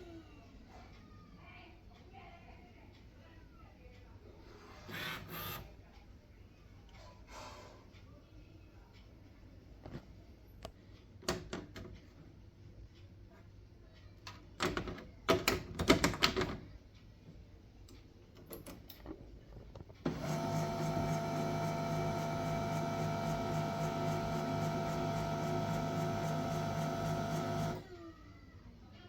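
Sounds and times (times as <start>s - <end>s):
printer motor humming: 4.9s - 5.6s, 20.0s - 27.9s.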